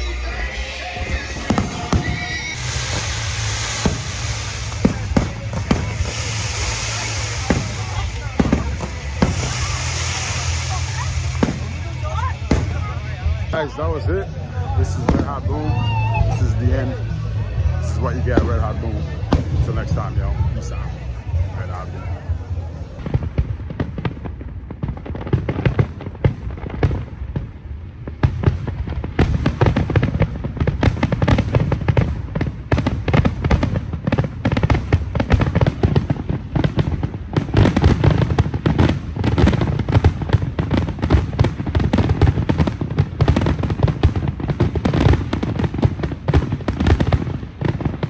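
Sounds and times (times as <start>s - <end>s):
fireworks bangs and crackling: 0.0s - 48.0s.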